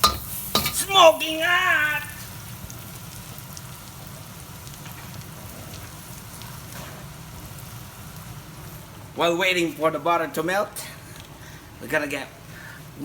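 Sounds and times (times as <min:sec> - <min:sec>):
butter and garlic sizzling in wok: 0:00.0 - 0:09.0.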